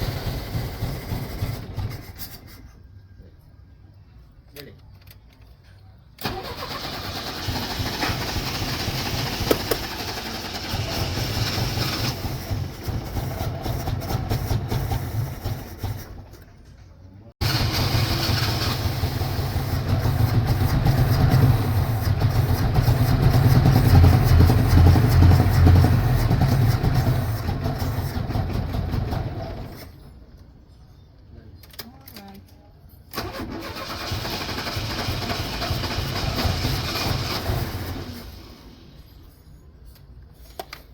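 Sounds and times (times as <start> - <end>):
sputtering misfiring car engine: 0.0 - 2.6, 6.2 - 16.3, 17.4 - 29.8, 33.2 - 38.8.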